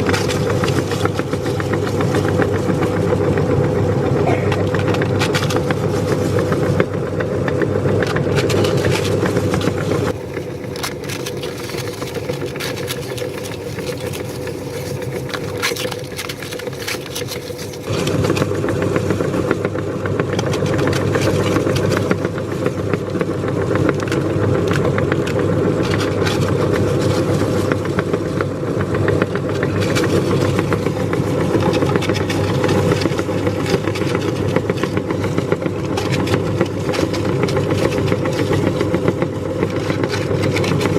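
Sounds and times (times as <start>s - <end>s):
meat grinder motor humming: 0.0s - 40.9s
crisp shells being crushed: 10.1s - 18.0s.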